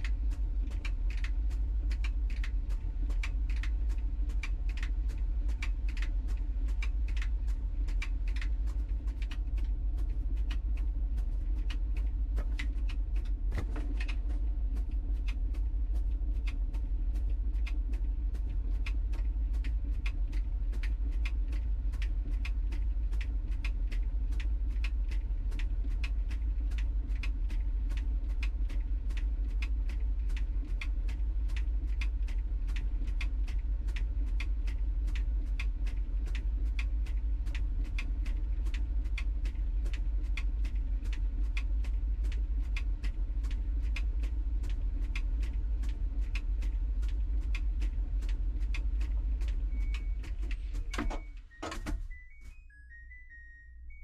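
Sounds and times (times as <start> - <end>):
tumbling load clicks and knocks: 0.0 - 52.2
clothes dryer drum humming: 0.0 - 52.8.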